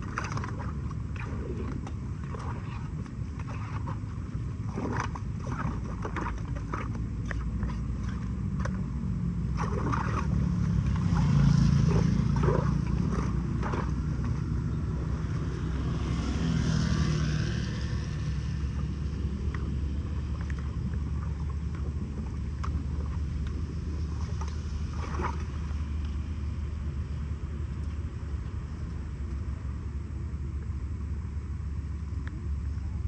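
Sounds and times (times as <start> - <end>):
floodwater rushing into drain: 9.6 - 14.4.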